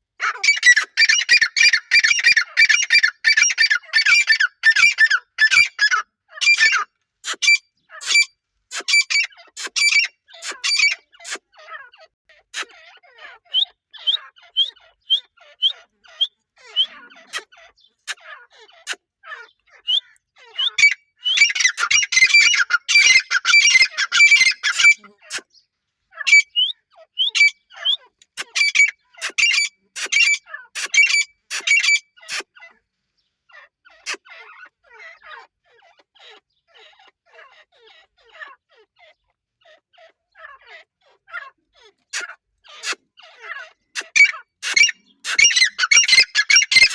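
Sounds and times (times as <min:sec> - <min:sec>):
francolin calling: 0:18.8 - 0:25.5, 0:44.0 - 0:46.9.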